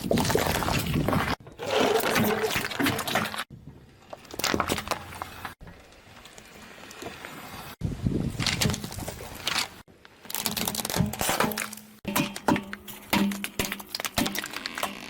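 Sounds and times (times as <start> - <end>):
wet squelching and splashing: 0.0 - 3.5.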